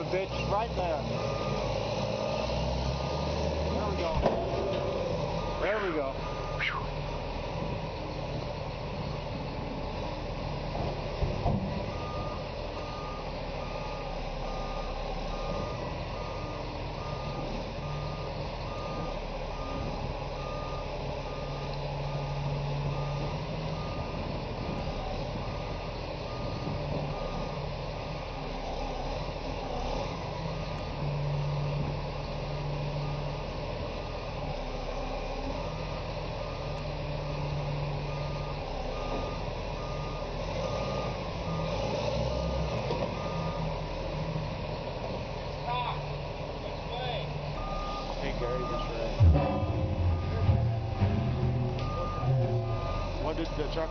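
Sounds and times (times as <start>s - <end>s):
diesel machine running: 0.0s - 53.9s
reversing alarm beeping: 0.3s - 4.0s, 5.4s - 6.9s, 11.9s - 24.3s, 38.0s - 42.0s, 43.2s - 43.8s, 47.5s - 53.9s.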